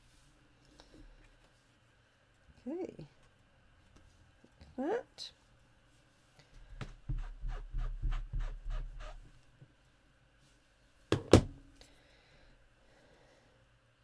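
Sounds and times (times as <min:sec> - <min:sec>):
sharp knocks: 0:11.1 - 0:11.6
stamping tools tapping on desk: 0:11.1 - 0:11.6.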